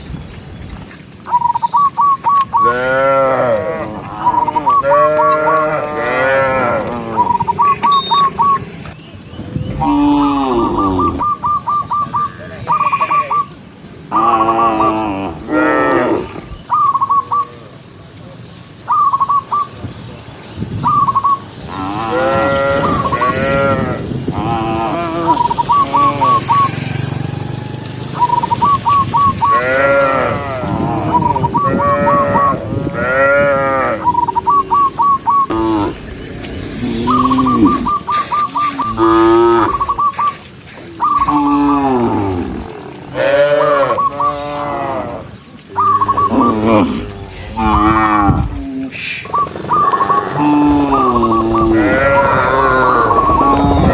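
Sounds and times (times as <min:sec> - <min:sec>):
cows mooing: 0:02.4 - 0:09.0, 0:09.7 - 0:11.6, 0:14.1 - 0:16.6, 0:21.6 - 0:40.4, 0:41.0 - 0:53.9.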